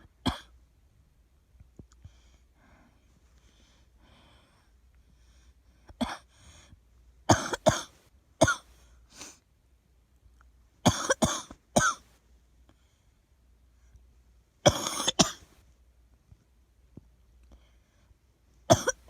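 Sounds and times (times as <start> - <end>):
faint breaths: 1.8 - 7.2, 12.0 - 14.3, 17.2 - 18.6
girl coughing: 6.0 - 6.2, 7.3 - 8.6, 10.9 - 12.0, 14.7 - 15.4, 18.7 - 19.0.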